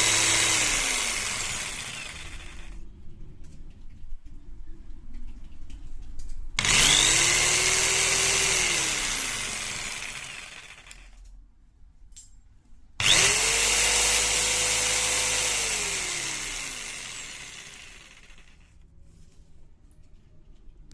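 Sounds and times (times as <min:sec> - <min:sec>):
electric jigsaw motor whining: 0:00.0 - 0:02.8, 0:06.6 - 0:11.2, 0:13.0 - 0:18.7.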